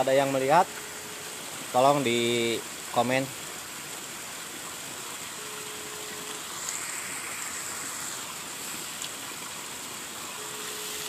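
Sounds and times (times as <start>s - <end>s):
high even whine: 0.0s - 2.6s, 5.2s - 8.8s, 10.2s - 11.0s
rushing hiss: 0.0s - 11.0s.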